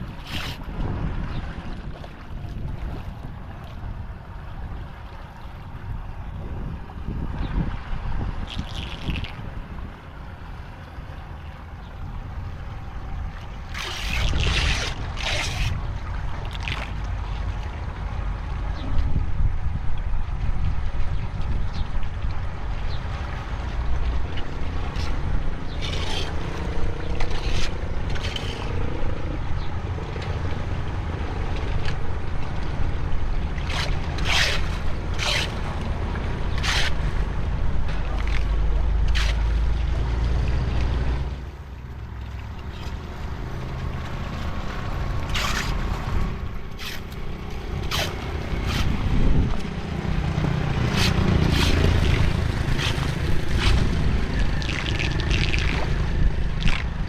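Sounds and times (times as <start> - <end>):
steady low rumble: 0.0 - 57.0
short scrapes and knocks: 24.9 - 26.6, 27.2 - 28.8, 33.7 - 35.8, 36.5 - 37.0, 39.1 - 39.5, 45.3 - 45.9, 47.9 - 49.0, 50.8 - 53.9.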